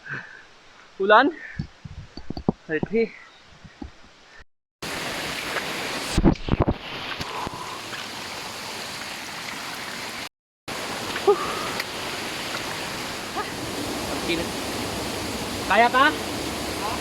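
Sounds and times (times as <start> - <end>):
rushing stream water: 4.8 - 17.0.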